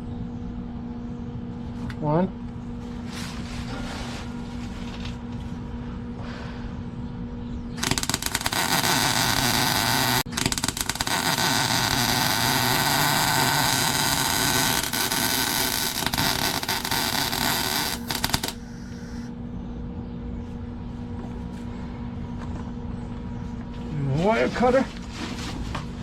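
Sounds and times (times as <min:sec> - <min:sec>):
faint steady hum: 0:00.0 - 0:24.3
welding arc crackling: 0:07.8 - 0:19.3.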